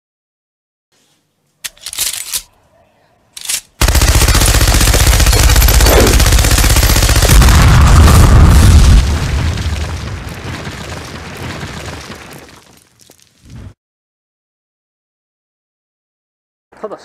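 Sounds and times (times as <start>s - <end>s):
automatic gunfire: 3.4s - 8.1s.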